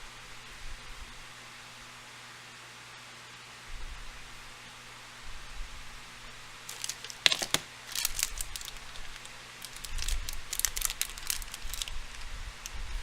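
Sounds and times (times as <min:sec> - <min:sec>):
crinkly packaging rustling: 0:06.6 - 0:13.0.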